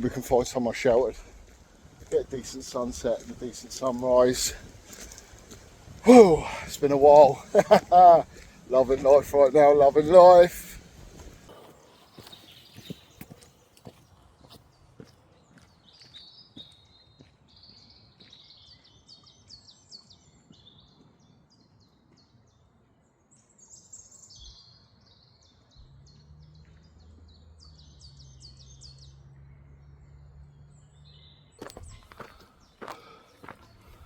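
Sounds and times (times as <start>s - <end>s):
faint songbirds singing: 0.0s - 34.0s
footsteps: 1.2s - 16.2s, 31.6s - 34.0s.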